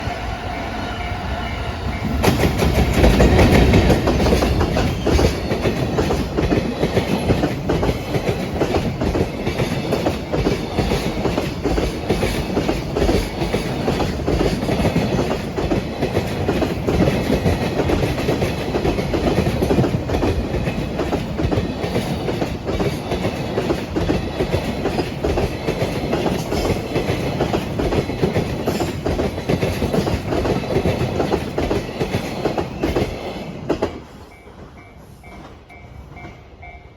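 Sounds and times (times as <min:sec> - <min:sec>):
electric locomotive passing: 0:00.0 - 0:36.9
wheels clacking over rail joints: 0:01.9 - 0:36.4
level crossing warning bell: 0:34.3 - 0:36.9.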